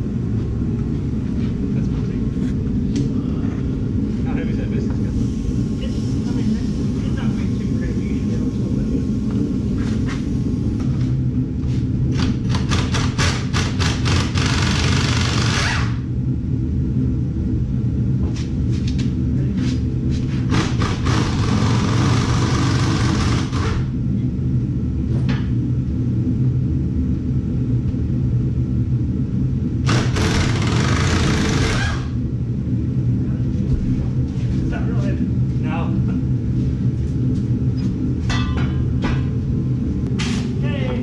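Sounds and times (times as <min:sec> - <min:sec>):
vehicle engine humming: 0:00.0 - 0:11.1.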